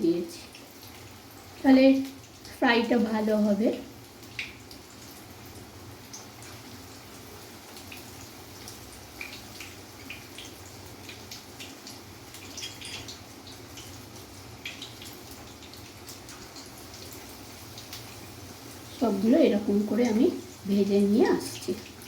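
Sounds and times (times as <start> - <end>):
chicken frying in hot oil: 0.0 - 22.0
oil crackles and pops: 4.1 - 19.1.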